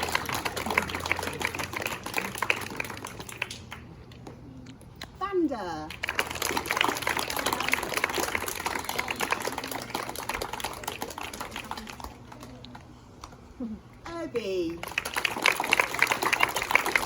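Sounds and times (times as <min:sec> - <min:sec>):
people cheering: 0:00.0 - 0:03.6, 0:06.1 - 0:12.6, 0:14.8 - 0:17.0
group clapping: 0:00.0 - 0:03.9, 0:05.8 - 0:12.9, 0:14.6 - 0:17.0.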